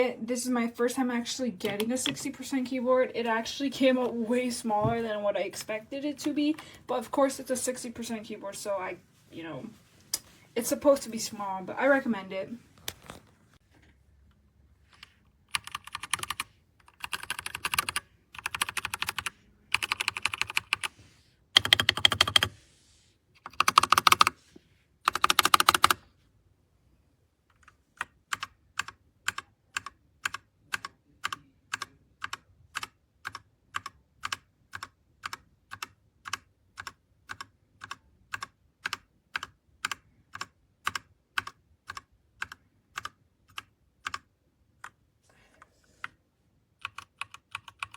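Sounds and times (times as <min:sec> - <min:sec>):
mechanical keyboard typing: 0:15.0 - 0:20.9, 0:21.6 - 0:22.5, 0:23.4 - 0:24.4, 0:25.1 - 0:26.0, 0:27.5 - 0:45.0, 0:46.8 - 0:47.9.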